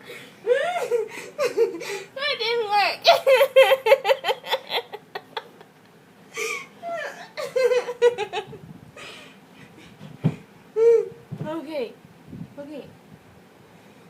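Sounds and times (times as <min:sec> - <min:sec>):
girl laughing: 0:00.4 - 0:02.1, 0:03.0 - 0:05.7, 0:06.4 - 0:10.0.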